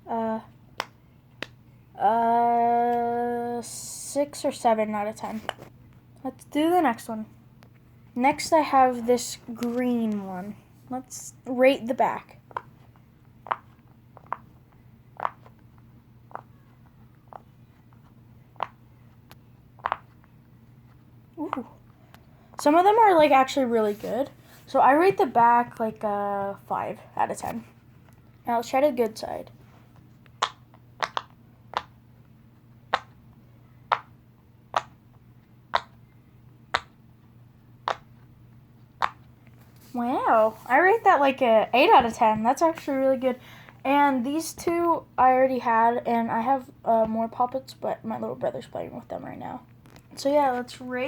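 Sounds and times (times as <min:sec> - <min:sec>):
fidget toy bubbles popping: 0:15.2 - 0:15.5, 0:19.8 - 0:20.0, 0:30.4 - 0:32.0, 0:32.9 - 0:33.2, 0:33.9 - 0:34.1, 0:34.7 - 0:35.0, 0:35.7 - 0:36.0, 0:36.7 - 0:36.9, 0:37.8 - 0:38.1, 0:39.0 - 0:39.2.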